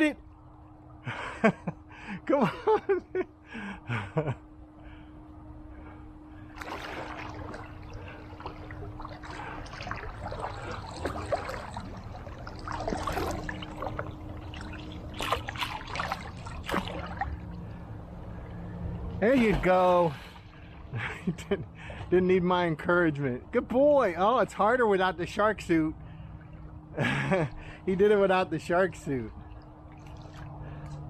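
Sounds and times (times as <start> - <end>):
steady low hum: 0.0 - 31.0
water splashing and sloshing: 6.3 - 22.4, 24.0 - 31.0.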